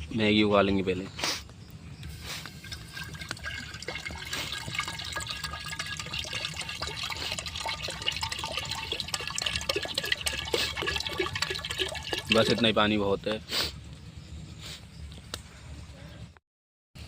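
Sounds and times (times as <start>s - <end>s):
water pouring into a pot: 2.6s - 12.8s.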